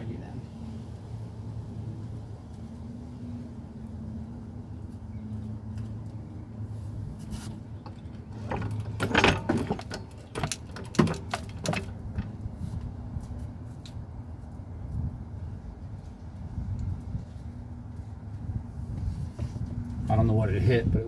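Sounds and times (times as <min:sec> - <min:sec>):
metal jack clattering: 0:07.8 - 0:12.4.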